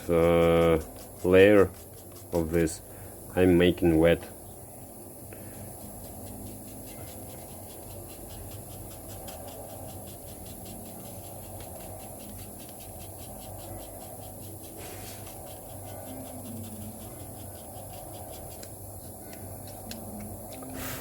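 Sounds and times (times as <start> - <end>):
sandpaper rubbing: 0.0 - 2.8, 5.8 - 18.8.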